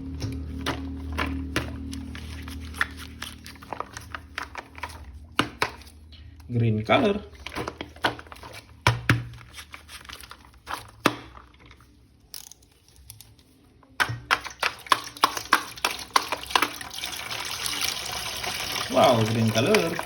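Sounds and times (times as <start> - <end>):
packaging crinkling: 0.3 - 6.1, 7.2 - 13.6.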